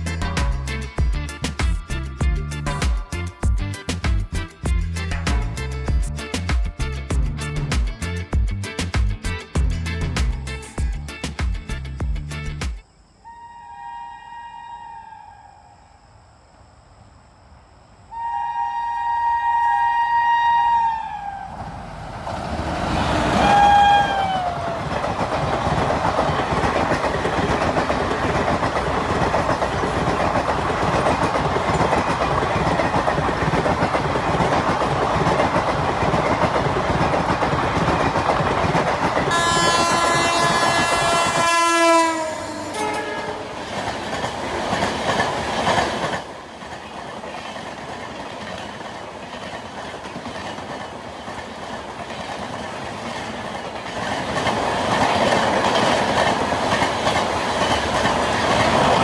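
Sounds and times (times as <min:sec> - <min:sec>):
toy train horn tone: 0:13.2 - 0:15.3, 0:18.1 - 0:21.4, 0:39.3 - 0:43.6.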